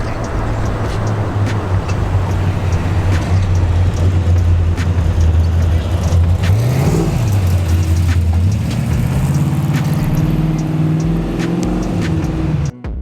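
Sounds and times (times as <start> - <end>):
car engine revving: 0.0 - 12.7.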